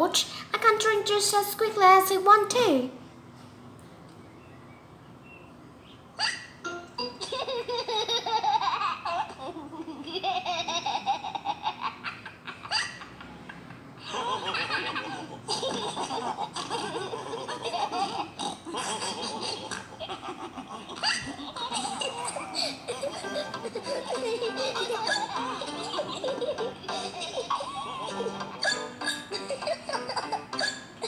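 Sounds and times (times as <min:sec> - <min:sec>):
cartoon voices laughing: 0:14.0 - 0:30.9
background music: 0:22.2 - 0:31.0.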